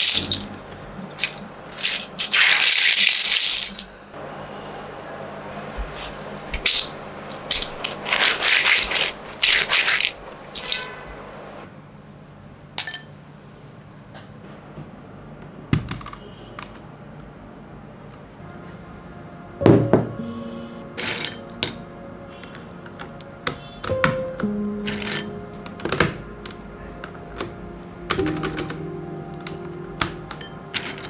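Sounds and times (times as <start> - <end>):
plastic keycaps rattling: 21.0 - 21.8, 22.4 - 31.0
keycap clicks and clacks: 22.4 - 31.0.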